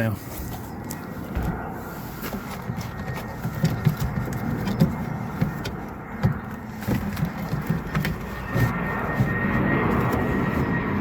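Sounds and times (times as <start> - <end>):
parts rattling inside car door: 1.3 - 9.4.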